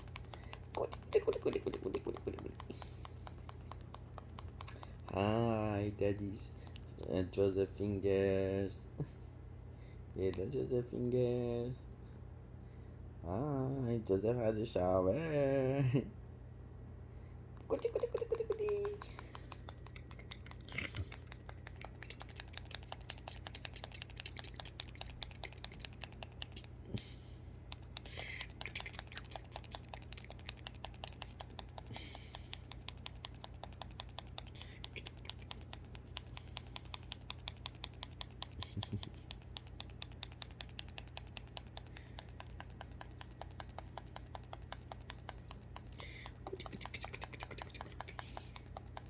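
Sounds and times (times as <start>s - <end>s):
rapid even clicking: 0.0s - 5.6s, 17.8s - 49.0s
low steady hum: 0.0s - 49.0s.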